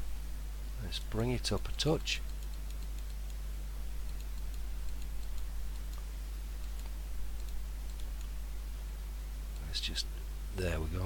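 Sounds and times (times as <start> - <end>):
low electrical hum: 0.0 - 11.0
computer mouse clicks: 1.9 - 3.4, 4.0 - 8.4.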